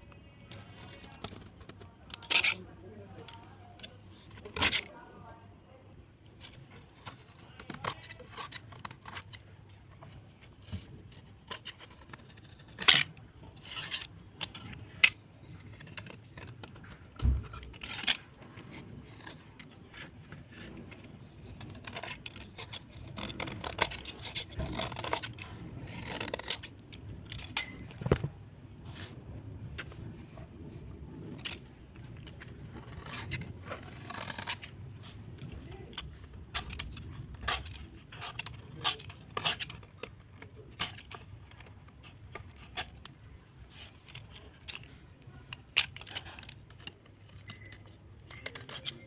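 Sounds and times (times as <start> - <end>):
slate cracking and snapping: 0.5 - 5.0, 6.4 - 10.0, 10.6 - 28.4, 31.2 - 43.2, 43.9 - 49.0
wet slate scraping and crunching: 10.6 - 28.3, 31.3 - 42.9.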